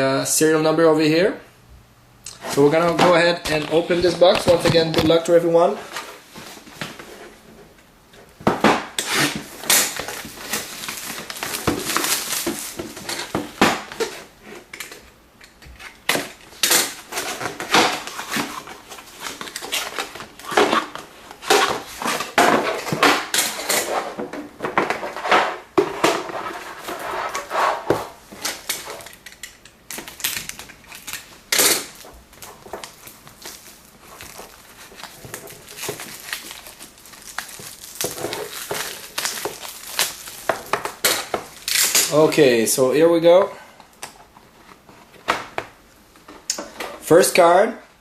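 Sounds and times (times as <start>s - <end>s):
plastic wrap crinkling and tearing: 8.9s - 15.0s, 15.8s - 24.0s, 26.1s - 42.7s.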